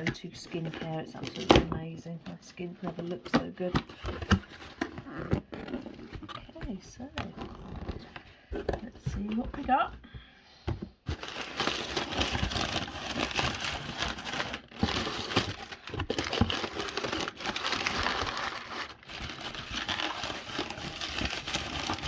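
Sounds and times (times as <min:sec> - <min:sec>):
packaging crinkling and rustling: 0:11.0 - 0:22.0.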